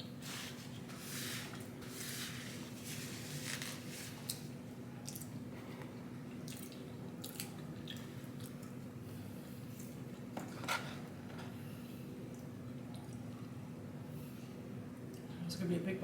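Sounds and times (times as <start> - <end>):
steady low hum: 0.0 - 16.0
wet chewing and mouth smacks: 5.0 - 5.4, 6.3 - 8.8.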